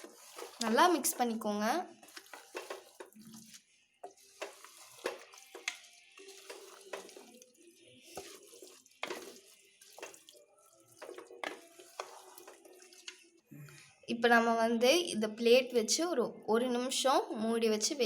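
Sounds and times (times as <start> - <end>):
ladle scraping a pot: 0.0 - 13.3.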